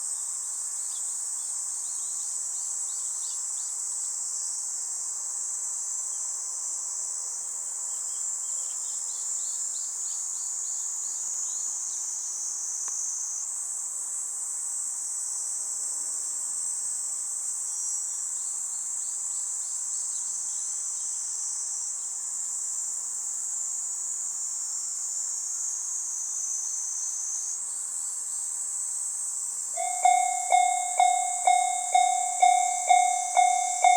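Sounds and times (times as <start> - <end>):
insects chirring: 29.8 - 33.9.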